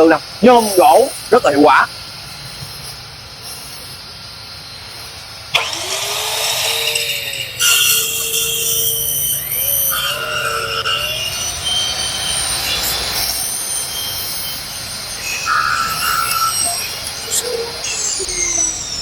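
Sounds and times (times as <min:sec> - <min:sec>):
saw cutting through steel: 0:05.5 - 0:18.9.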